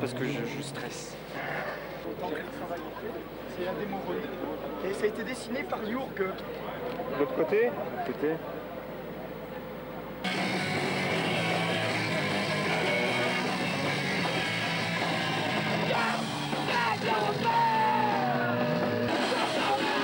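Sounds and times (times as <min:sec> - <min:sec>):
punk rock with yelled singing: 0:10.3 - 0:20.0.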